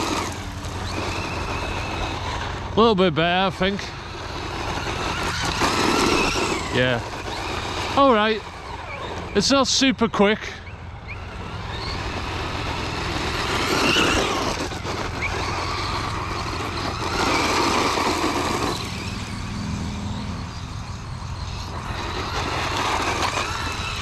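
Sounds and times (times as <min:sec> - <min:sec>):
rc truck motor whine: 0:00.0 - 0:24.0
tyre noise: 0:11.6 - 0:19.9.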